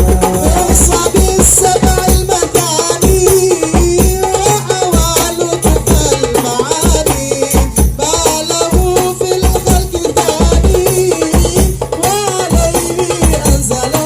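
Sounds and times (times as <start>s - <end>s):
frame drums playing: 0.0s - 14.0s.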